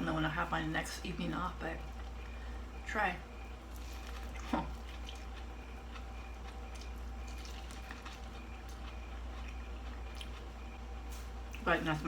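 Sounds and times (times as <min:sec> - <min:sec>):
steady low hum: 0:00.0 - 0:12.0
wet chewing clicks: 0:03.9 - 0:10.6.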